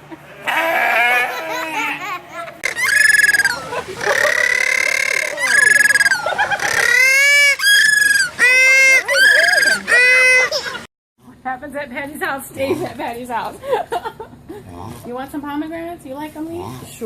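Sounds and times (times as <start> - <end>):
bird crying loudly: 2.6 - 10.8.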